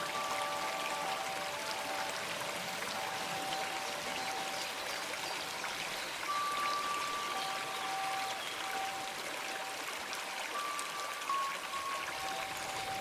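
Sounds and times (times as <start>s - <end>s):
flowing water: 0.0s - 13.0s
soft bell tones: 6.3s - 13.0s.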